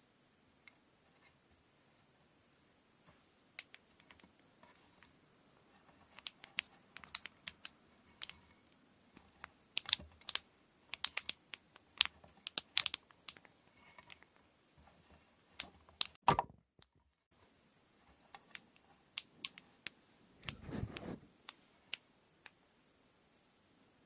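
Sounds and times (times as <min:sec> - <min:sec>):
light clicks and taps of tools: 0:05.7 - 0:16.2.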